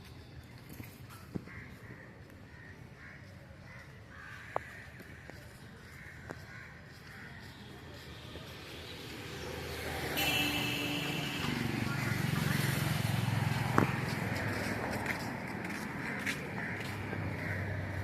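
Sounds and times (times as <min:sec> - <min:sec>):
crows cawing: 0:14.2 - 0:18.0.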